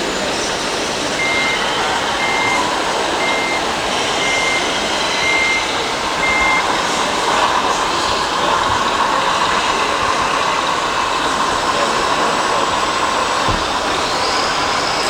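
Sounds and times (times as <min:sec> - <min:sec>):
steady background noise: 0:00.0 - 0:15.0
reversing beeper: 0:01.0 - 0:08.1.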